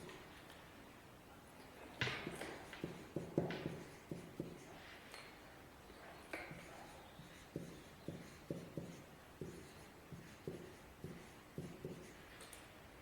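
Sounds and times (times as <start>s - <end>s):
marker pen writing: 2.2s - 4.8s, 6.3s - 12.2s.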